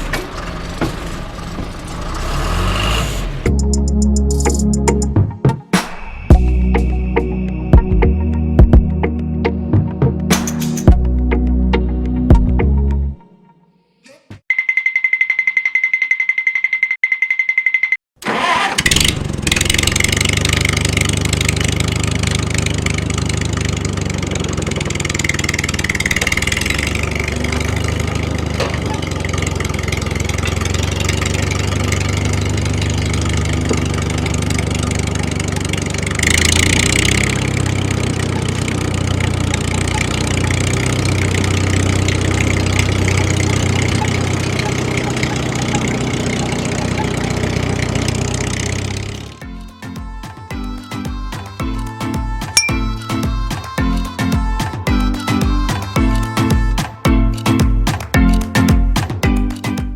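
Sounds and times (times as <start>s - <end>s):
engine idling: 0.0s - 3.8s, 18.3s - 49.5s.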